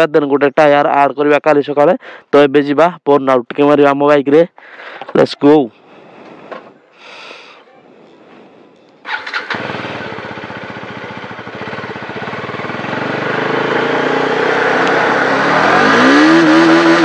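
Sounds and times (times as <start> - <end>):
motorcycle engine revving: 9.1 - 17.0.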